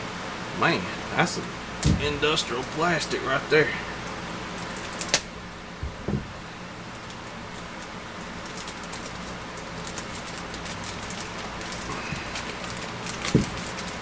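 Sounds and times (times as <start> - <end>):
dull knocks: 1.8 - 2.3, 5.8 - 6.5
plastic packaging crinkling: 5.9 - 14.0.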